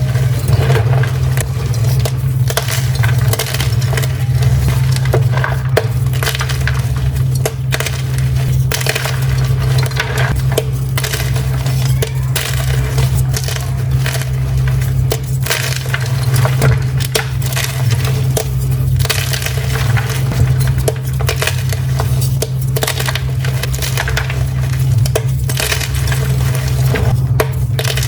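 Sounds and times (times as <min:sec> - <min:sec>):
chalk crunching and crumbling: 0:00.0 - 0:28.0
steady low hum: 0:00.0 - 0:28.0.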